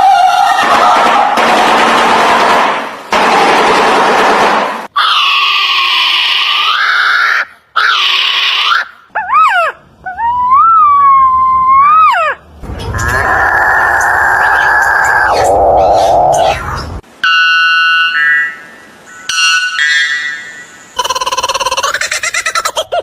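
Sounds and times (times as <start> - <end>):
rasping bird screeches: 5.0 - 8.9.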